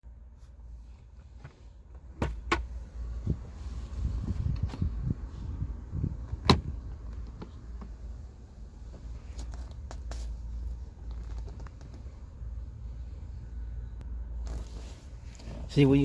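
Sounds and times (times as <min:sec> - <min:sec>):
steady low rumble: 0:00.0 - 0:16.0
plastic glove box clicks: 0:06.3 - 0:07.9.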